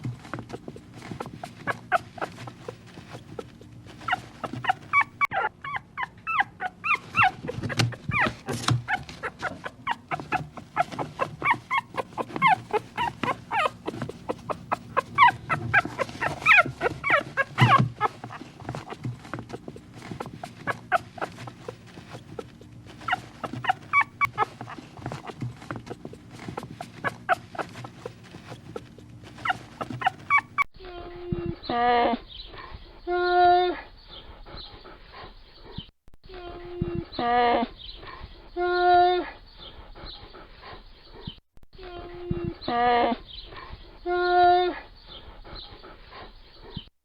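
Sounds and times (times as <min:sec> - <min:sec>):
puppy whimpering and squeaking: 0:00.5 - 0:32.4.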